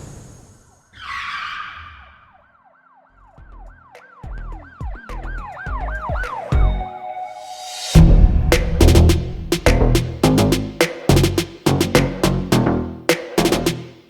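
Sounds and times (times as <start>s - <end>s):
siren-like whoops: 1.0s - 7.9s
heavy bass beats: 8.0s - 14.0s.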